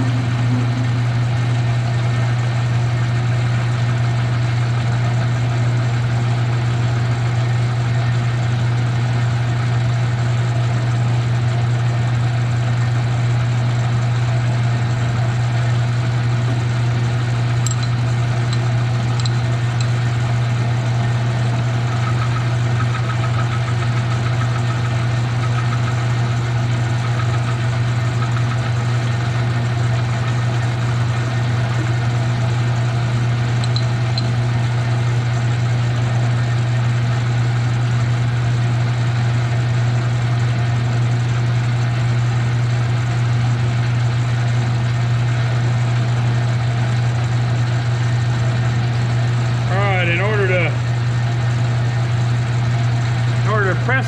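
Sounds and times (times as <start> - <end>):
metal lathe running: 0.0 - 6.4, 13.5 - 38.2, 47.5 - 54.0.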